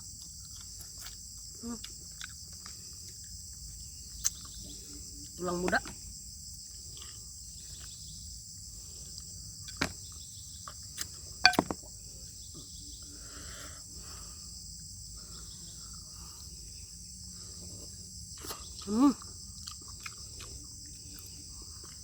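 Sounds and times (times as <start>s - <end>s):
quiet chewing: 0.1s - 5.9s, 6.5s - 11.2s, 17.4s - 22.0s.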